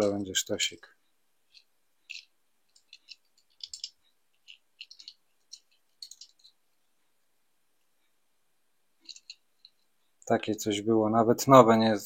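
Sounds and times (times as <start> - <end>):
toy car clicking and tapping: 1.5 - 6.6, 9.0 - 9.9.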